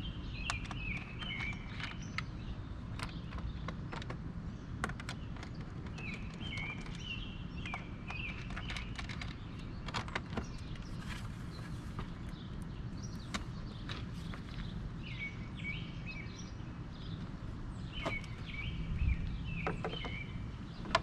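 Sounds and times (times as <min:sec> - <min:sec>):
bird chirping: 0:00.0 - 0:21.0
low outdoor rumble: 0:00.0 - 0:21.0
sharp clicks and knocks: 0:00.4 - 0:14.8, 0:19.6 - 0:21.0.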